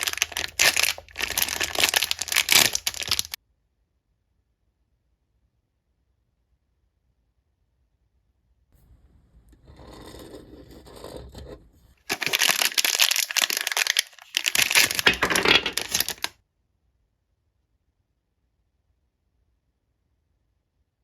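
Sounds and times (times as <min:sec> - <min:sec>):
packaging crinkling and tearing: 0:00.0 - 0:03.4, 0:12.1 - 0:16.3.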